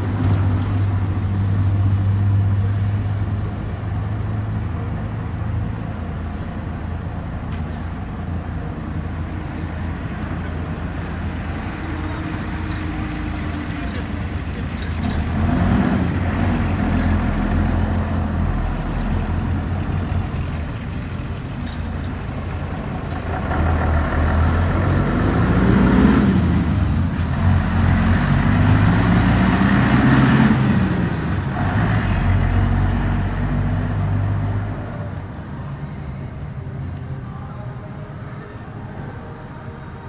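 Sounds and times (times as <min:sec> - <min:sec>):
steady traffic hum: 0:00.0 - 0:40.0
vehicle engine accelerating: 0:09.8 - 0:21.9, 0:22.7 - 0:35.2.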